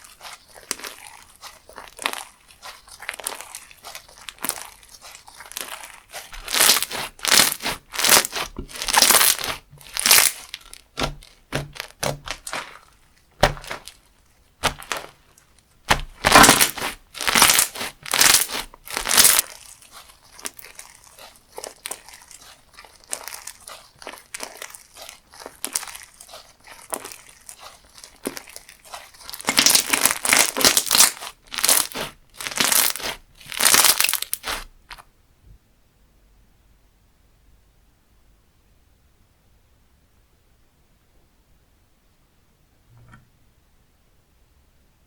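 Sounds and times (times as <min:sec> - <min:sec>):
crunchy slime crackling: 0:00.0 - 0:35.0.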